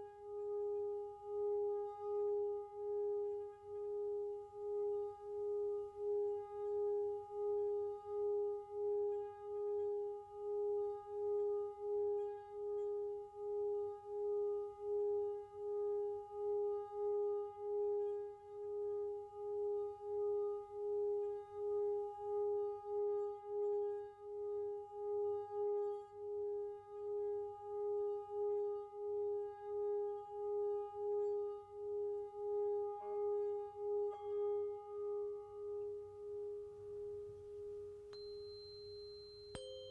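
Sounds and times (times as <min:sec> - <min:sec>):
singing bowl low pulsing tone: 0:00.0 - 0:39.9
higher ringing tone: 0:38.2 - 0:39.9.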